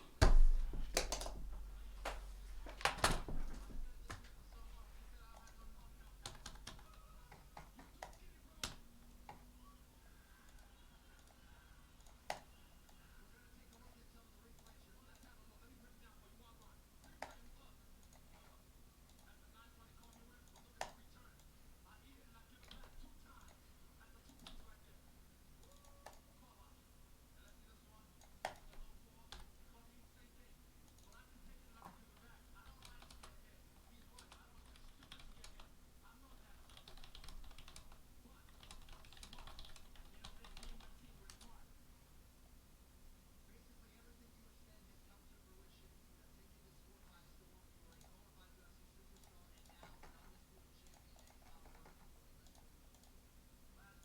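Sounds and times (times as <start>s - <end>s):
low steady hum: 0.0s - 54.0s
computer keyboard keystrokes: 0.8s - 1.4s, 6.2s - 9.4s, 28.2s - 29.5s, 32.6s - 33.4s, 34.1s - 35.7s, 36.6s - 41.5s, 49.2s - 53.2s.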